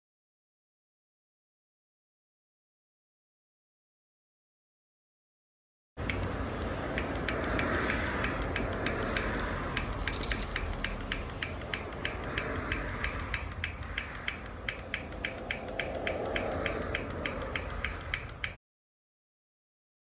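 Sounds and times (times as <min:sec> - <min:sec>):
rapid mechanical clicks: 0:06.0 - 0:18.6.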